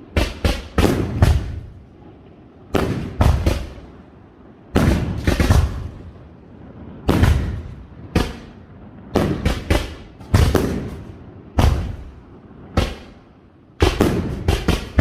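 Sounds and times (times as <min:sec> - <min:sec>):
firework shells bursting: 0:02.7 - 0:04.0, 0:04.8 - 0:06.0.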